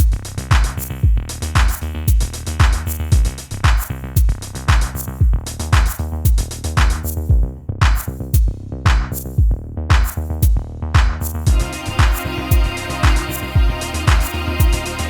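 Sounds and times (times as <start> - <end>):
electronic music with drum beat: 0.0 - 15.0.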